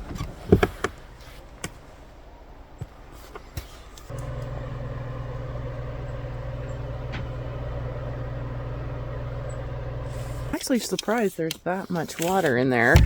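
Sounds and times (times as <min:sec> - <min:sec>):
motor hum: 0:04.1 - 0:10.6.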